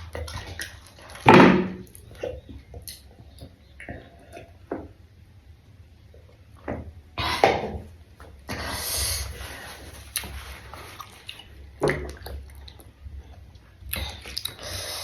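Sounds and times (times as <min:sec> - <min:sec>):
wet chewing of vegetables: 0:09.4 - 0:15.0.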